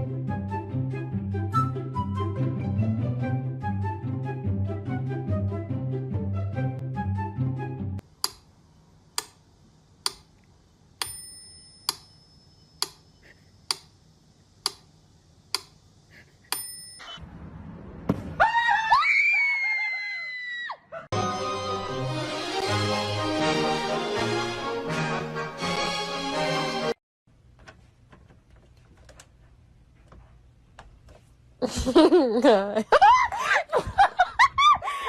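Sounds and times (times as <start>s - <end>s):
music: 0.0s - 8.0s, 21.1s - 27.0s
sharp clicks: 10.0s - 11.1s, 13.7s - 14.0s, 14.6s - 14.9s, 15.5s - 15.8s
bell-like ring: 11.0s - 12.8s, 16.5s - 17.2s.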